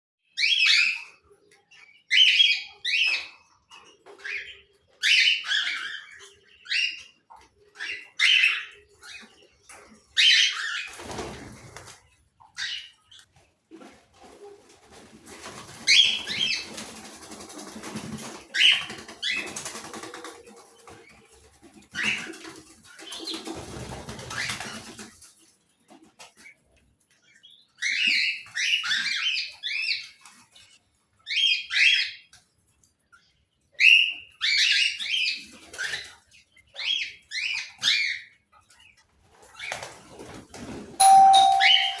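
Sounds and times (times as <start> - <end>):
parrots chirping: 41.0 - 42.0.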